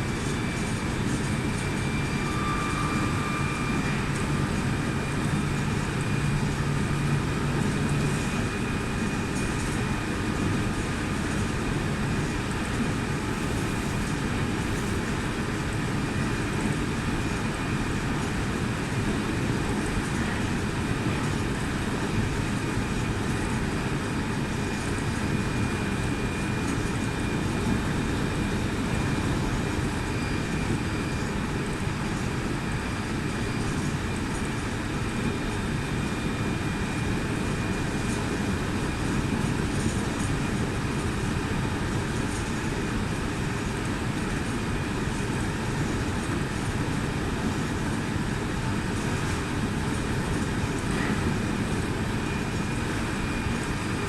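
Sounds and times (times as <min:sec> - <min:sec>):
train wheels rumbling on rail: 0:12.5 - 0:22.1.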